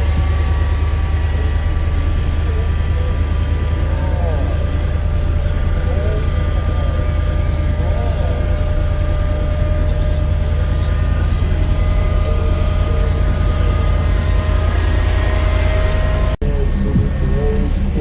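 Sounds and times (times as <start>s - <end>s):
heavy subwoofer bass: 0.0s - 15.0s, 15.9s - 18.0s.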